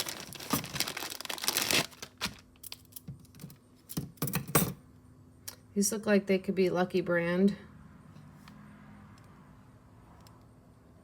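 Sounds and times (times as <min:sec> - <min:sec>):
plastic packaging crinkling: 0:00.0 - 0:03.5.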